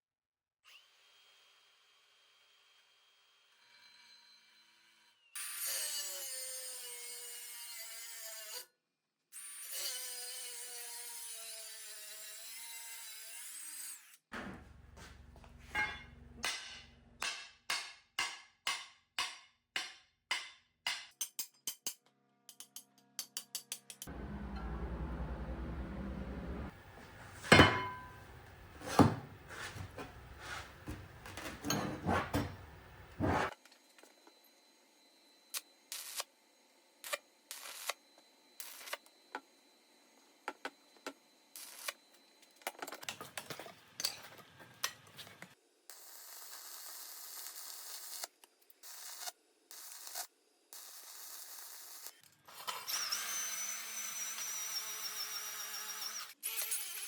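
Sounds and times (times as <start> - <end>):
tools knocking and clinking on metal: 15.7 - 17.8, 27.3 - 33.0.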